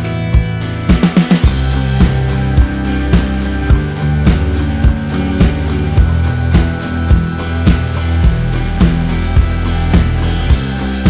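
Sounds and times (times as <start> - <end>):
guitar and bass notes: 0.0 - 11.0
drum beat: 0.9 - 11.0.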